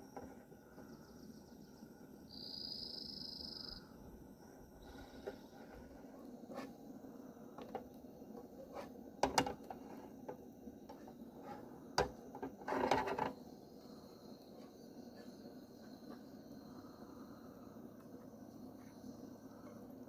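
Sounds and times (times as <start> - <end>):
clicks and knocks of handling: 9.2 - 11.2, 12.0 - 13.4
rattling scrape: 12.4 - 13.4.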